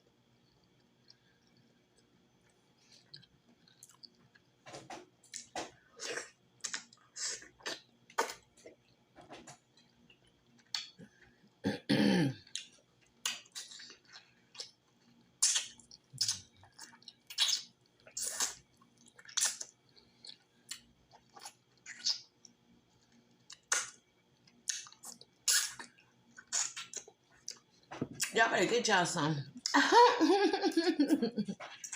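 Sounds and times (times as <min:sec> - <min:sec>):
wet chewing and lip smacks: 0:00.4 - 0:04.6, 0:09.7 - 0:11.3, 0:12.5 - 0:28.3.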